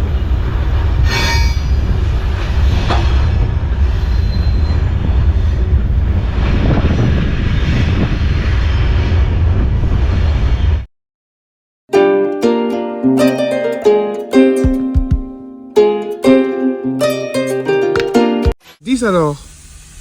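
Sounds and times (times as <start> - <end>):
train wagons rumbling: 0.0 - 10.6
metallic wheel squeal: 1.0 - 1.9, 3.8 - 5.8
sharp clank: 1.0 - 1.9.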